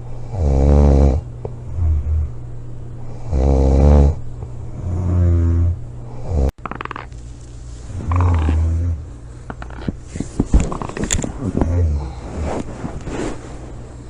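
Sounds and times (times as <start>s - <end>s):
girl snoring loudly: 0.3s - 2.3s, 3.2s - 4.2s, 4.8s - 6.6s, 8.0s - 9.0s.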